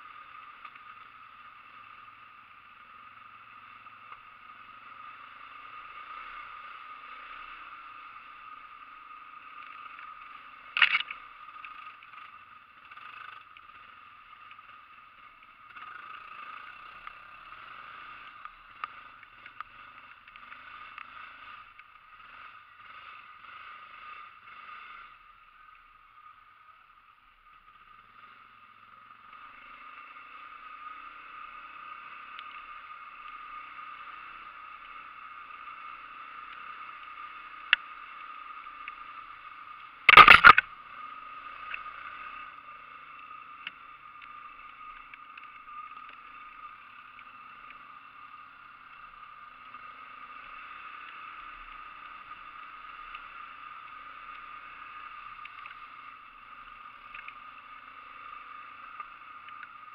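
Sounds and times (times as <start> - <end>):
atv engines running: 0.0 - 59.9
sharp knock: 40.1 - 40.6.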